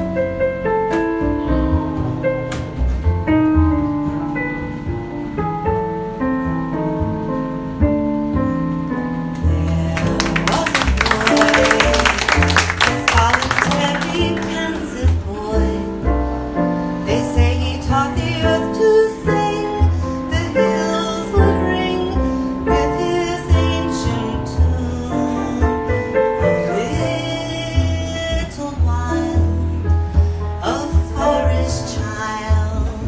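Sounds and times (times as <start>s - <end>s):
bass notes: 0.0s - 33.0s
applause: 9.9s - 15.2s.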